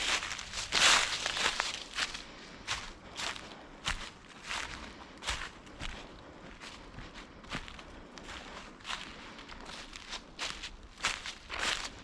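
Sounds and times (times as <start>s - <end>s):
footsteps crunching on leaves: 0.0s - 12.0s.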